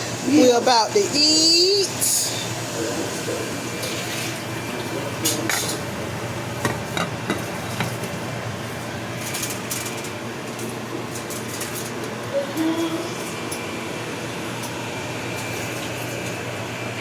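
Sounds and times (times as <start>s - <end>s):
dishes and utensils clinking: 5.2s - 5.9s, 6.6s - 8.2s.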